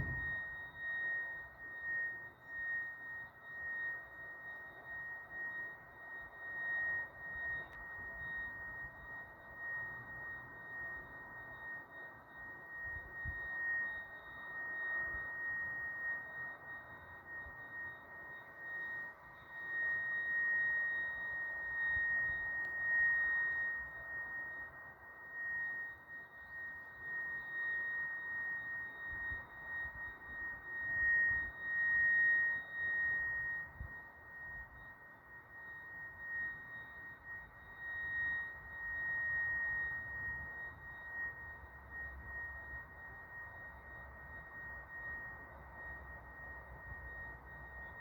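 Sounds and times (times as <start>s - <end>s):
low thump: 0.0s - 0.3s
faint low rumbling: 0.0s - 0.4s
high-pitched hum: 0.0s - 48.0s
high-pitched steady tone: 0.0s - 48.0s.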